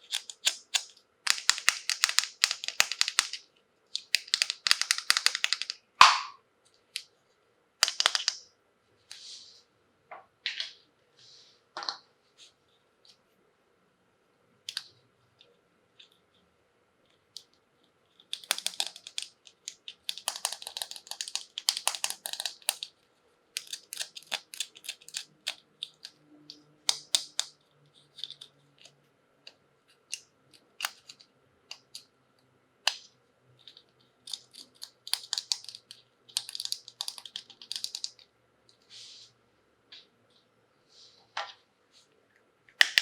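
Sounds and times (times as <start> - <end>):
plastic pieces clicking: 0.0 - 3.4, 4.0 - 5.8, 7.8 - 8.4, 18.2 - 22.9, 23.6 - 28.9, 30.1 - 32.1, 32.9 - 38.3, 42.7 - 43.0.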